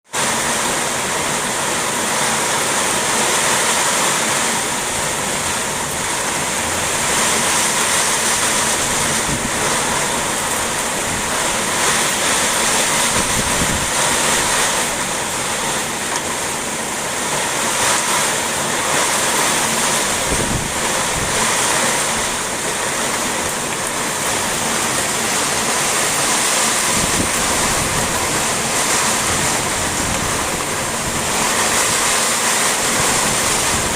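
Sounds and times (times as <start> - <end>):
heavy rain pouring: 0.0 - 33.9
strong wind gusts: 2.9 - 33.9
wind thumps on microphone: 8.2 - 14.8, 19.9 - 22.3, 26.8 - 32.1.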